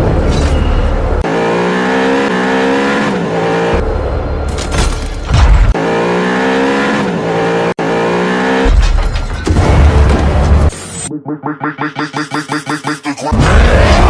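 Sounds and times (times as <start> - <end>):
car engine: 0.0 - 11.1.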